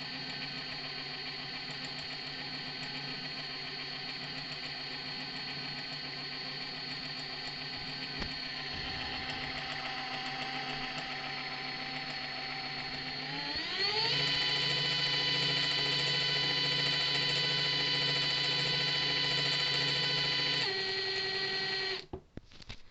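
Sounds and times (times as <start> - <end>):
electric bike motor whining: 0.0 - 22.1
metallic noise from motor: 7.3 - 22.0.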